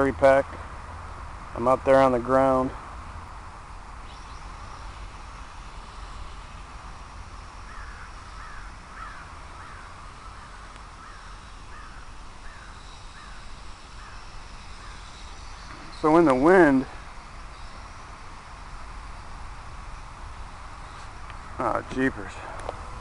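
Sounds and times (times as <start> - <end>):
bird calling: 4.0 - 6.6, 7.2 - 18.4.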